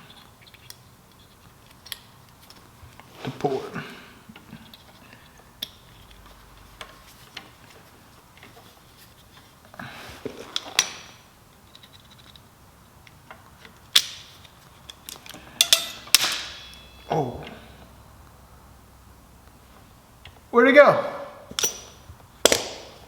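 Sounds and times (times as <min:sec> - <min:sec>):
small metal clicks and clinks: 0:13.9 - 0:17.1.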